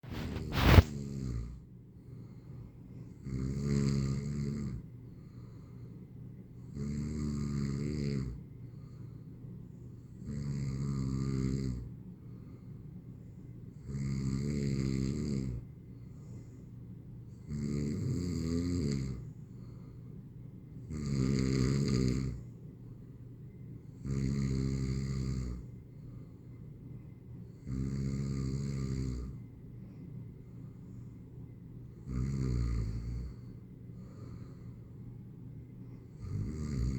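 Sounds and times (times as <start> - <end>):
quiet breathing: 0.0 - 36.9
person snoring: 0.1 - 1.6, 3.2 - 4.8, 20.9 - 22.4, 24.0 - 25.6, 27.6 - 29.4, 32.1 - 33.5, 36.2 - 36.9.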